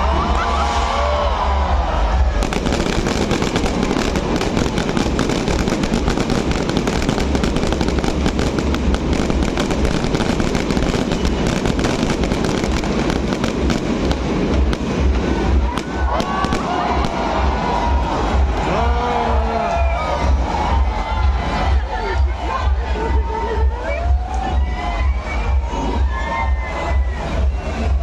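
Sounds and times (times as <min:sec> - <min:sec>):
fireworks crackling: 0:02.1 - 0:18.8.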